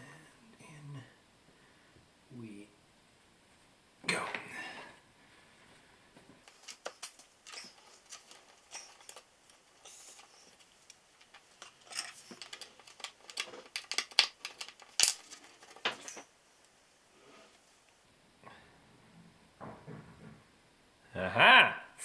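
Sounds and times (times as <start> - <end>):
hands handling small parts: 6.4 - 16.3.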